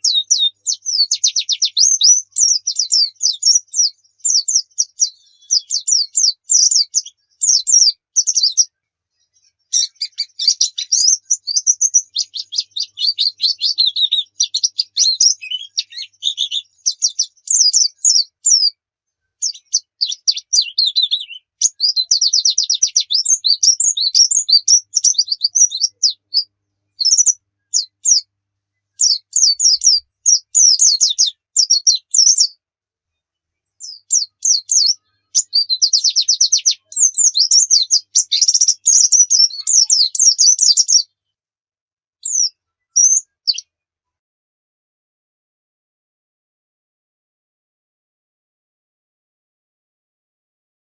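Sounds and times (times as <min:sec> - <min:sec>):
bird chattering song: 0:00.0 - 0:08.7, 0:09.4 - 0:18.8, 0:19.4 - 0:28.3, 0:29.0 - 0:32.6, 0:33.8 - 0:41.1, 0:42.2 - 0:43.7.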